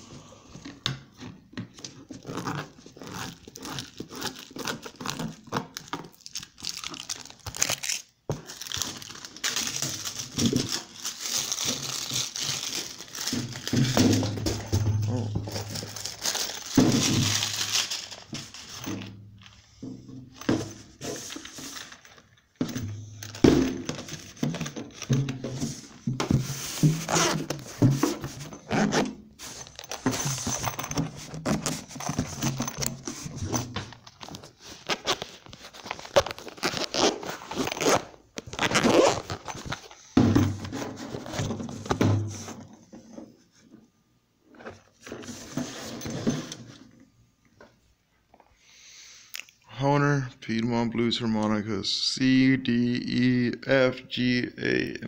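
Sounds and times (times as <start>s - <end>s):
packaging tearing: 2.2s - 13.9s, 15.2s - 18.3s
packaging crinkling: 2.2s - 18.8s, 34.1s - 39.9s.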